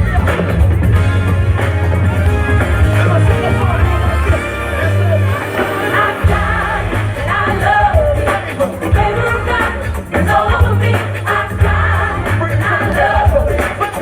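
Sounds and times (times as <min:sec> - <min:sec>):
band with heavy bass: 0:00.0 - 0:14.0
lead singer singing gospel: 0:02.3 - 0:14.0.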